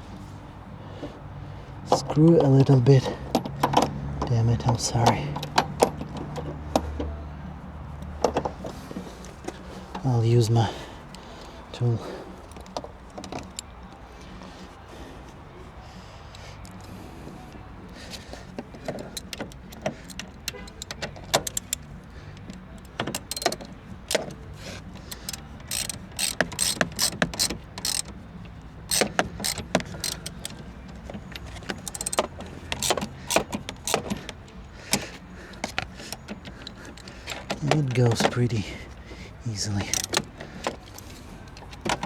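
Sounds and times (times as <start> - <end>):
ratchet wrench clicking: 18.8 - 38.3, 39.6 - 41.8.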